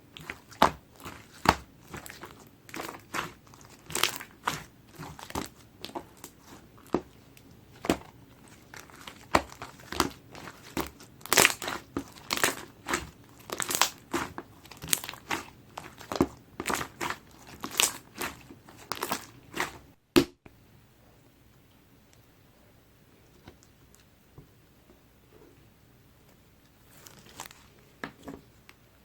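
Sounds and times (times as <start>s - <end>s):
hands squishing slime: 0.0s - 20.3s.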